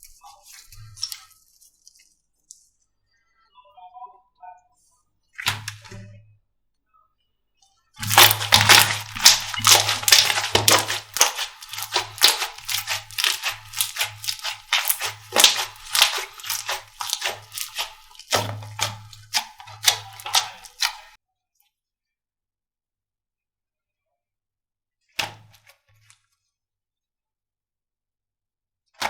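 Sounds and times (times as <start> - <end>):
slime crackling and popping: 8.0 - 21.2.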